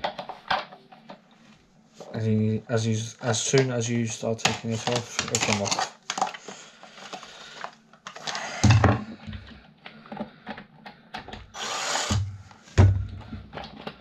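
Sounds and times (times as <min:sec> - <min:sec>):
plastic clicks and knocks: 0:00.0 - 0:01.2
plastic scraping: 0:04.4 - 0:10.6.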